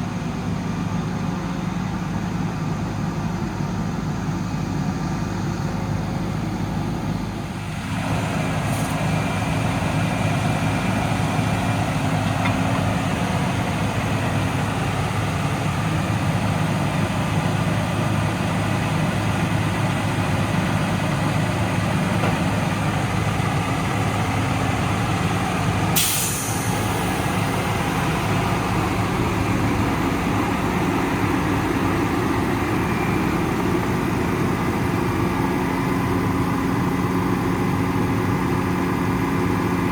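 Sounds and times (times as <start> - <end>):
diesel engine running: 0.0 - 39.9
air brake hiss: 26.0 - 27.5.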